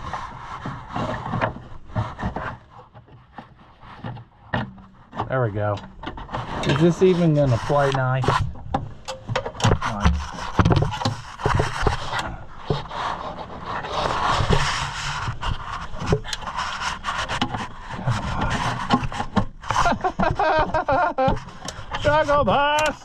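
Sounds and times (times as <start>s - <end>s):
cable housing rubbing and scraping: 0.0s - 23.0s
clicks and knocks: 8.2s - 12.9s.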